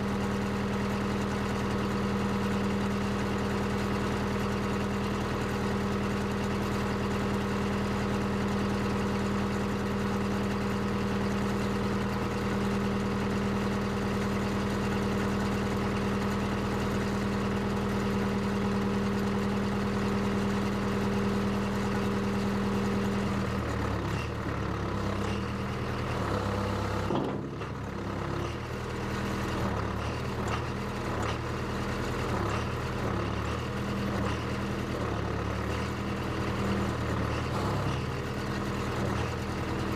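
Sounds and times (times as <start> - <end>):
backhoe engine running: 0.0 - 39.9.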